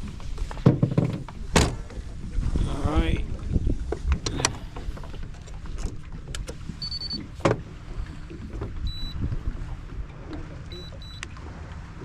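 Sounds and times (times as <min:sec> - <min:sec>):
boat engine rumble: 0:00.0 - 0:12.0
knocks and thuds: 0:00.6 - 0:01.8.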